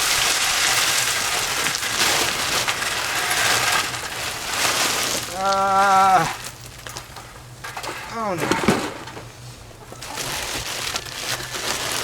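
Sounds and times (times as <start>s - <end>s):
sand and stones rattling in sieve: 0.0s - 7.0s, 10.0s - 12.0s.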